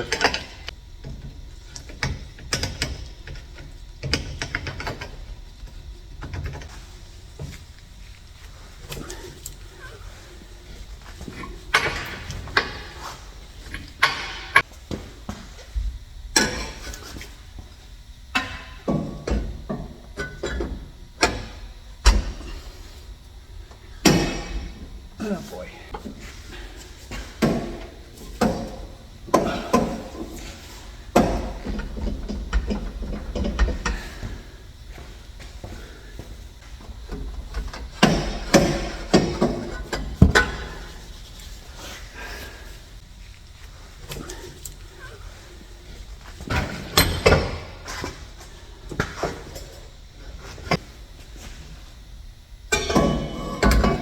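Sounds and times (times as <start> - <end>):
metal pipes clanking and scraping: 16.4 - 17.4, 25.9 - 34.4, 37.2 - 42.0, 52.7 - 54.0.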